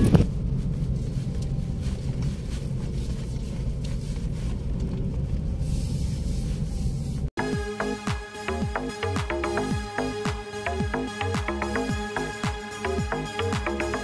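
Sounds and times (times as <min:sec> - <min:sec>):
steady low rumble: 0:00.0 - 0:07.8.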